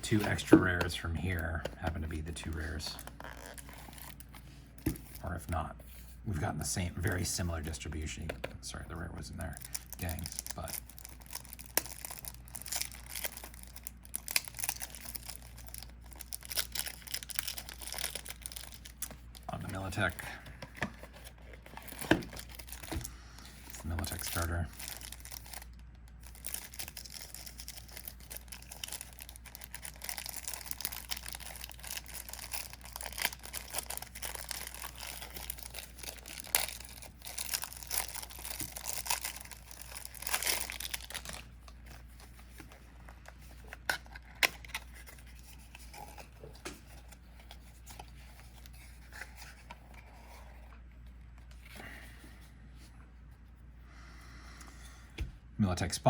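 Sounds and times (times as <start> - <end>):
plastic wrapping tearing and crinkling: 0.0 - 4.3, 9.6 - 20.2, 23.6 - 49.7.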